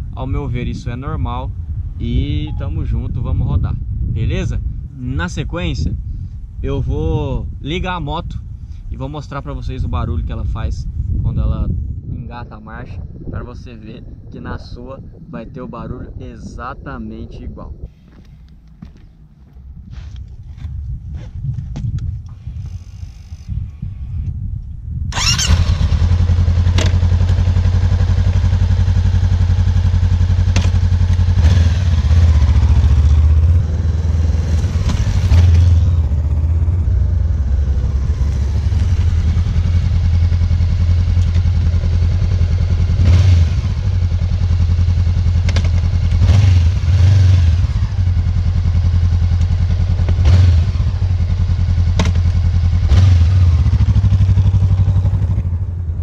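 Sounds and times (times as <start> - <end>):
motorcycle engine idling: 25.2 - 46.2, 47.6 - 56.0.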